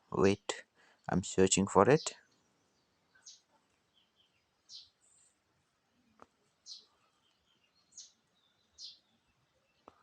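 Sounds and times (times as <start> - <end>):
faint bird chirps: 1.8 - 10.0.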